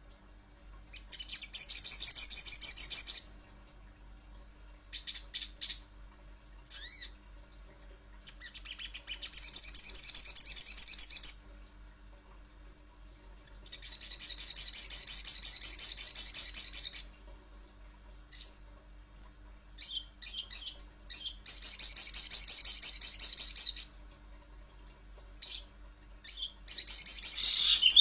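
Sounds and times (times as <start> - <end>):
bird singing high trills: 26.8 - 28.0.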